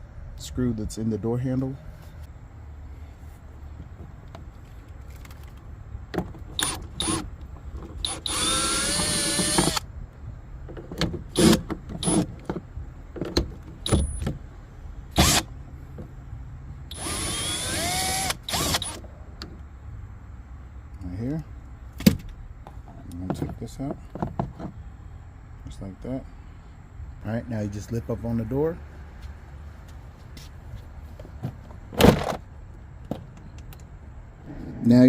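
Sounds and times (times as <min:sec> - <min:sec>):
power drill motor whine: 0:08.0 - 0:09.8, 0:15.2 - 0:15.4, 0:16.9 - 0:19.0.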